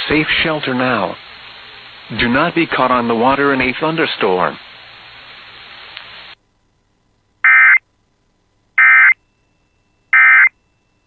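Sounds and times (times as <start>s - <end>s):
receiver hiss: 0.0s - 11.0s.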